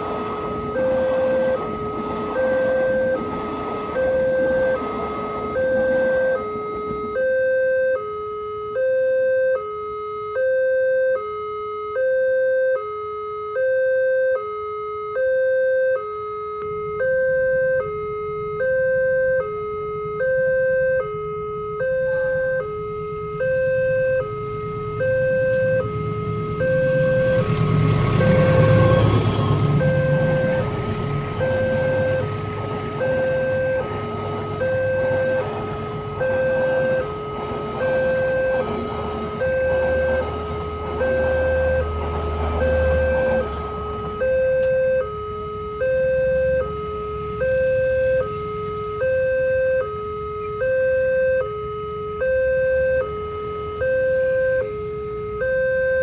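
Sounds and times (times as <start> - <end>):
low traffic rumble: 0.0 - 9.5, 16.6 - 56.0
level-crossing two-tone alarm: 0.0 - 56.0.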